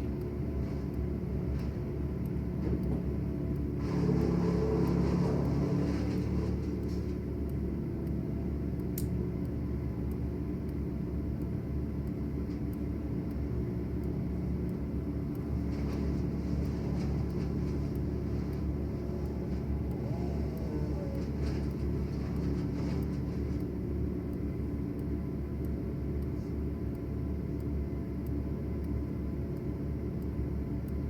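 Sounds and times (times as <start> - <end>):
motor engine running: 3.8 - 7.3, 15.3 - 23.7
faint ticks: 6.6 - 31.0.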